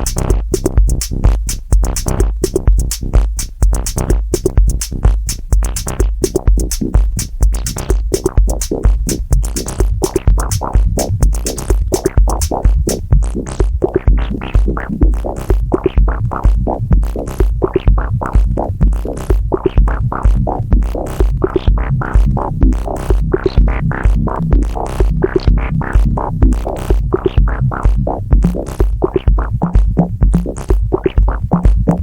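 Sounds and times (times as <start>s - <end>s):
hi-hats: 0.0s - 13.8s, 18.4s - 29.0s
drum machine kick drum: 0.0s - 32.0s.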